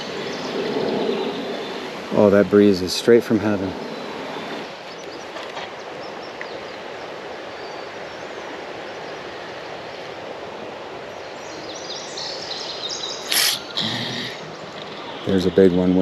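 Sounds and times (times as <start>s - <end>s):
creek water flowing: 0.0s - 16.0s
faint high bird chirps: 11.4s - 16.0s.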